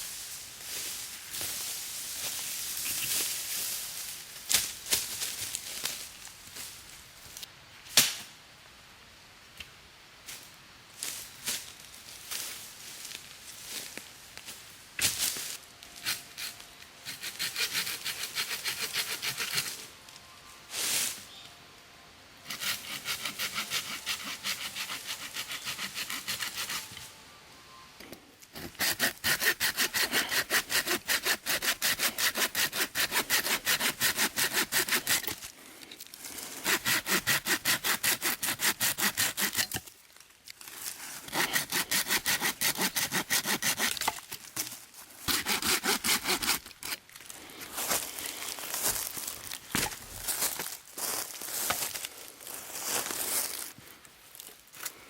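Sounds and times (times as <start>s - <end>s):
hand saw cutting wood: 16.0s - 19.9s, 22.5s - 27.0s, 28.5s - 35.5s, 36.4s - 39.8s, 41.2s - 44.6s, 45.2s - 47.0s.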